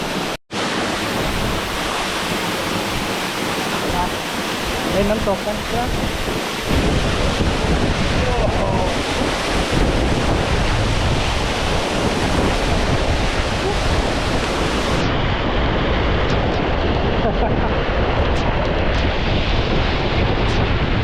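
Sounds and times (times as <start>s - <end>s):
waterfall rushing: 0.0s - 15.2s
wind buffeting microphone: 0.0s - 21.0s.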